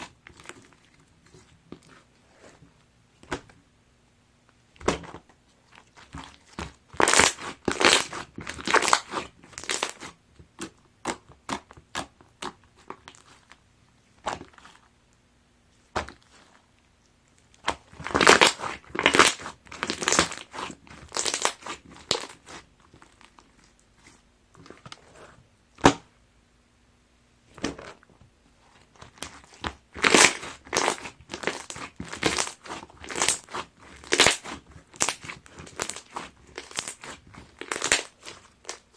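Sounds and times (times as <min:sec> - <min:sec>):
slime squishing with sticky pops: 0:00.0 - 0:02.2, 0:04.8 - 0:14.9, 0:15.9 - 0:26.1, 0:27.5 - 0:38.9.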